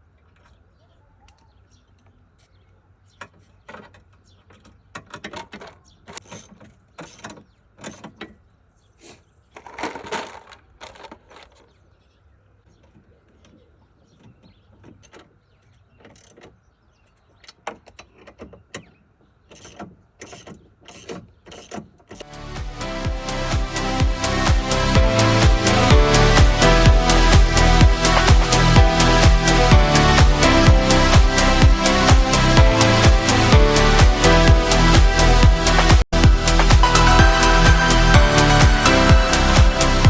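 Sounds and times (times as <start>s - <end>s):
hand tools clicking and clunking: 2.3s - 11.8s, 14.1s - 22.3s.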